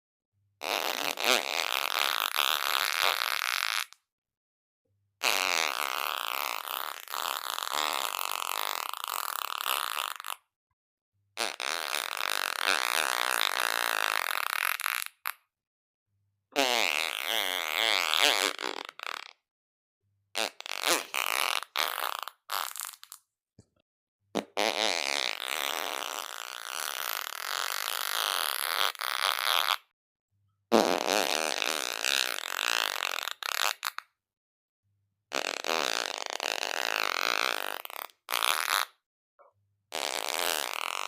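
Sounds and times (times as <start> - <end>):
farts: 0.6 - 4.0, 5.2 - 10.4, 11.4 - 15.5, 16.6 - 19.4, 20.4 - 23.2, 24.4 - 29.9, 30.7 - 34.1, 35.3 - 39.0, 39.9 - 41.0.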